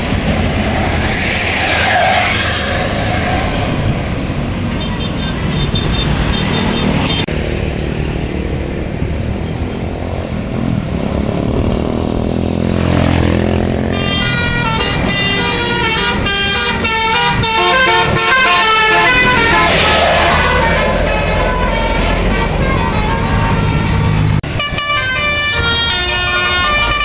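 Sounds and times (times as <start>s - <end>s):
bus engine running: 0.0s - 27.0s
multi-tone bus horn melody: 12.9s - 27.0s.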